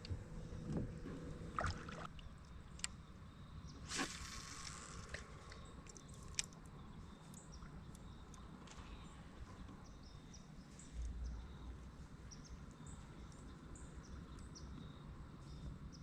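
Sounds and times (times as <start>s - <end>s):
water drips and small splashes: 1.5s - 3.0s, 3.9s - 8.4s.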